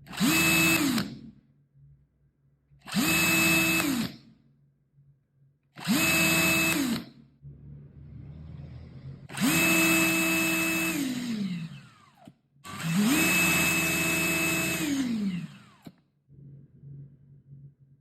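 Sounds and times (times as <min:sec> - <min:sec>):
cordless drill motor whining: 0:00.1 - 0:01.2, 0:02.9 - 0:04.2, 0:05.8 - 0:07.1, 0:09.3 - 0:16.0.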